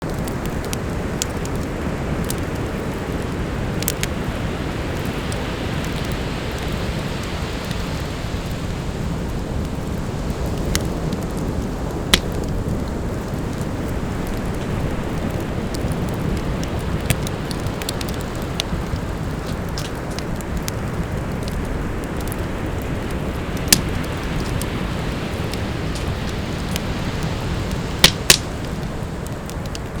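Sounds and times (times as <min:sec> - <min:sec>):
campfire crackling and popping: 0:00.0 - 0:30.0
ocean surf: 0:21.5 - 0:30.0.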